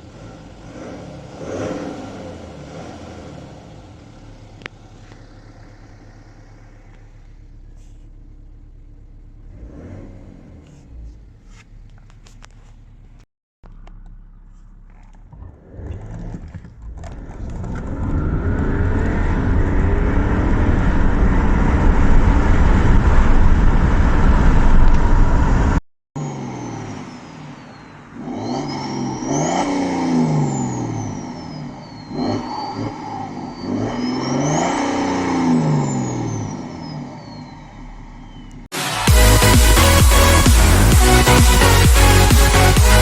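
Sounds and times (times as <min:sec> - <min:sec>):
diesel engine accelerating and revving: 0:00.0 - 0:43.0
high turbo whistle: 0:38.7 - 0:43.0.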